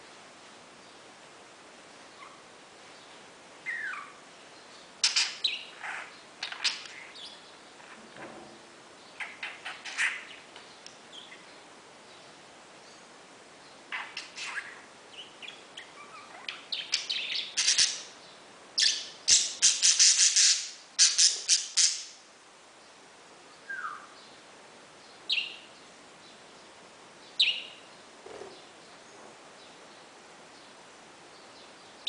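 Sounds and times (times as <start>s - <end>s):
parakeet chirping: 3.6s - 4.2s, 5.0s - 7.4s, 9.2s - 10.4s, 13.9s - 18.1s, 18.8s - 22.1s, 27.4s - 27.7s.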